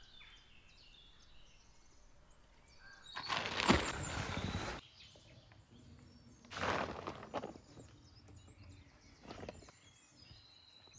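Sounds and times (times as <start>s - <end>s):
faint high bird chirps: 0.0s - 6.3s.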